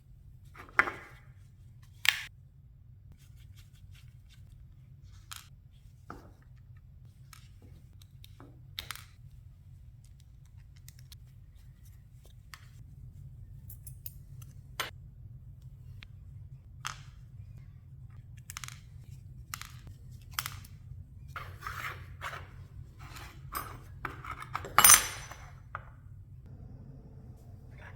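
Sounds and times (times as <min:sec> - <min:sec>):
steady low hum: 0:08.6 - 0:27.9.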